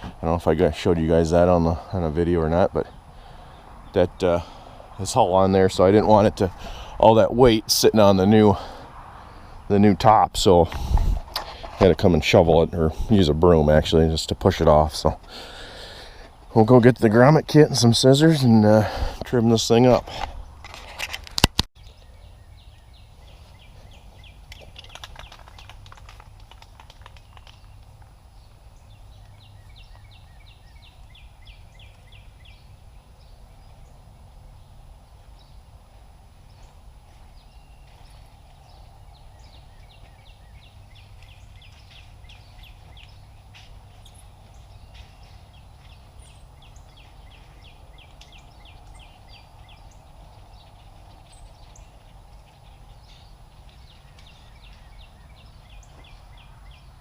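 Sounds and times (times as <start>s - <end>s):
animal calls with clicking trills: 24.4s - 28.1s.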